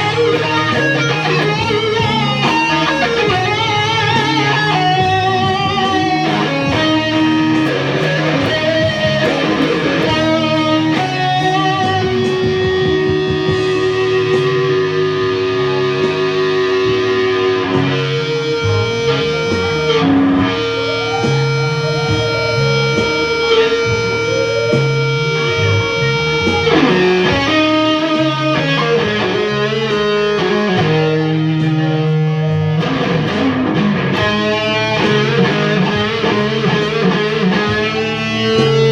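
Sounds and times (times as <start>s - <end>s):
bass line: 0.0s - 38.9s
electric guitar rock jam: 0.0s - 38.9s.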